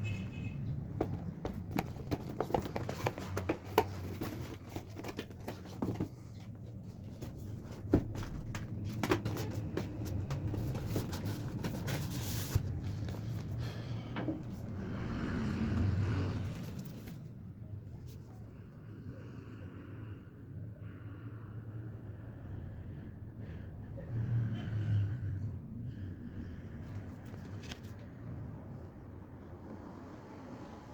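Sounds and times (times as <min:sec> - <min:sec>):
clicks and knocks of objects handled: 0:00.9 - 0:14.6.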